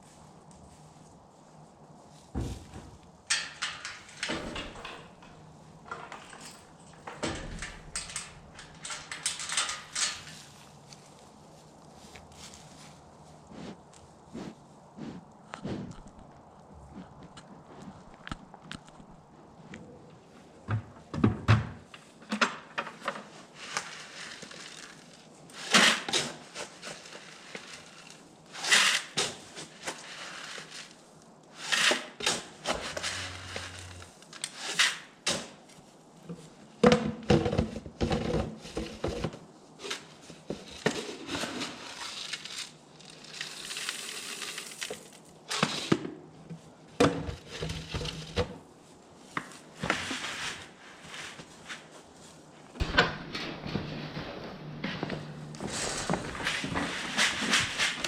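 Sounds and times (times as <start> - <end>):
rustling: 0.0 - 20.6, 22.8 - 36.7, 46.5 - 58.0
knocks and clatter: 2.4 - 10.3.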